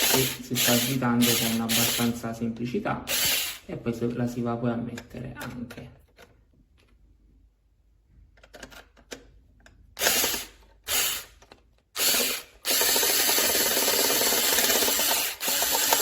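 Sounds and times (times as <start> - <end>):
electric screwdriver motor: 0.0 - 2.1, 3.1 - 3.6, 10.0 - 11.4, 12.0 - 16.0.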